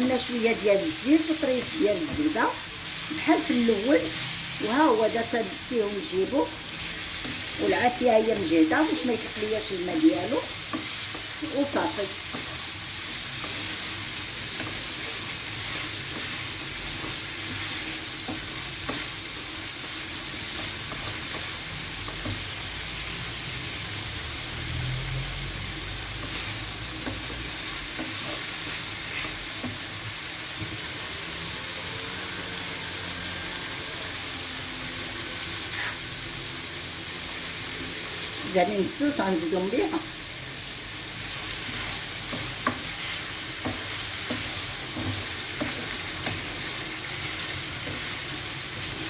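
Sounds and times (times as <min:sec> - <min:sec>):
squid sizzling in oil: 0:00.0 - 0:49.0.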